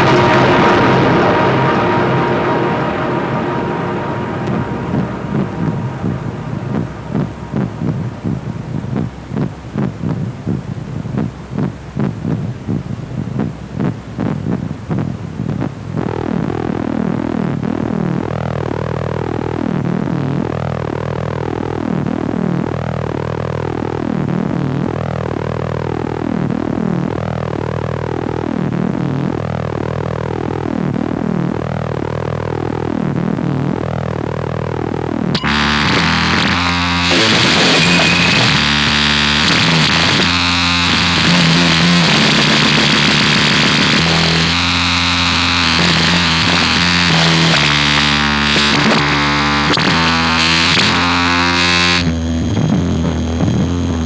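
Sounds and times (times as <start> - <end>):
synthesizer tones sweeping: 0.0 - 9.7, 35.4 - 54.0
steady low drone: 0.0 - 12.2, 35.4 - 54.0
harsh distorted noise: 0.0 - 17.4, 33.8 - 54.0.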